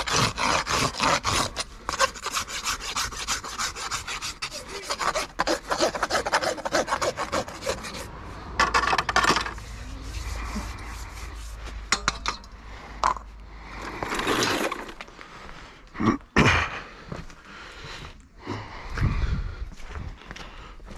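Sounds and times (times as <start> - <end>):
rasp filing a hoof: 0.0 - 12.2.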